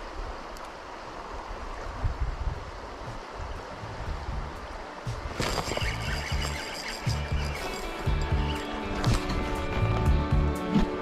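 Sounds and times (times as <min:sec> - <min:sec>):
river water flowing: 0:00.0 - 0:11.0.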